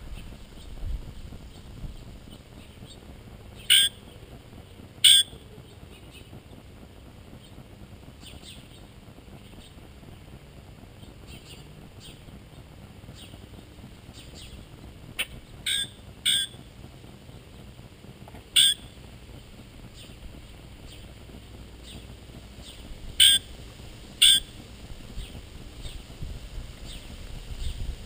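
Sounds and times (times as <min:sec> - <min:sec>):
small birds chirping faintly: 0:00.0 - 0:28.0
short loud bird calls: 0:24.2 - 0:24.5.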